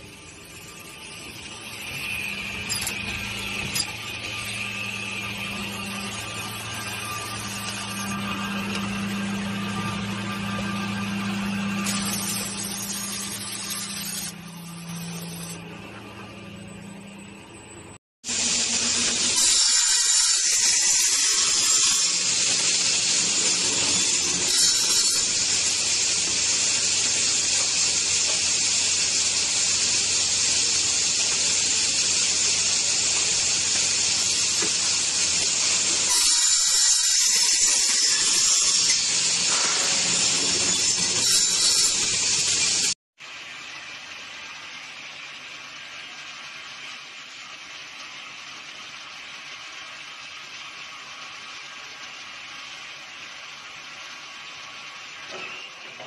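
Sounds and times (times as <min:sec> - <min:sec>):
sanding machine abrasive hiss: 0:25.0 - 0:36.1.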